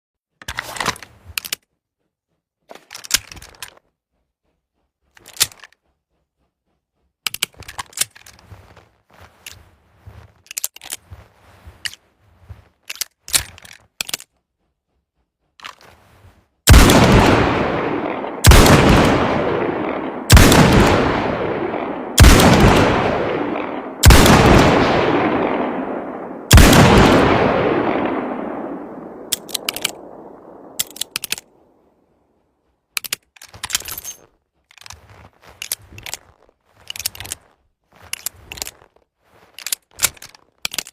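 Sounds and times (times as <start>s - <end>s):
metallic clicks handling a gun: 0.4s - 1.7s, 2.7s - 3.8s, 5.2s - 5.8s, 7.3s - 8.4s, 10.4s - 11.1s, 12.8s - 14.4s, 29.3s - 30.0s, 30.8s - 31.5s, 33.0s - 40.9s.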